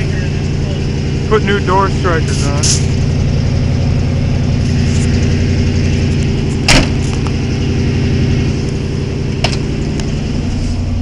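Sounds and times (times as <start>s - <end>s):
pickup engine idling: 0.0s - 11.0s
loud thump: 6.6s - 7.3s, 9.4s - 9.7s.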